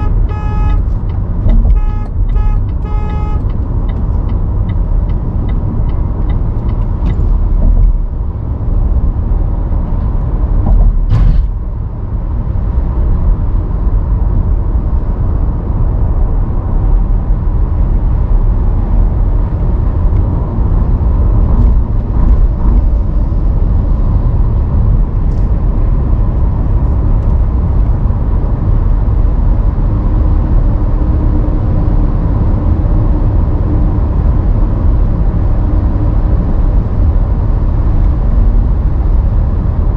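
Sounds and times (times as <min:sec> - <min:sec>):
car driving rumble: 0:00.0 - 0:39.9.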